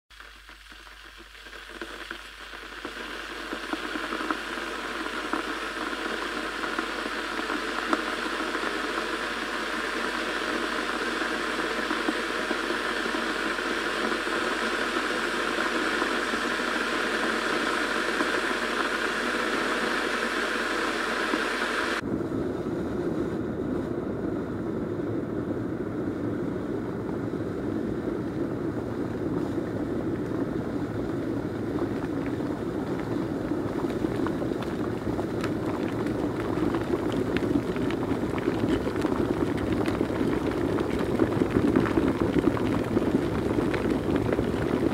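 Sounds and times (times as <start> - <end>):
kettle heating water: 0.1 - 44.9.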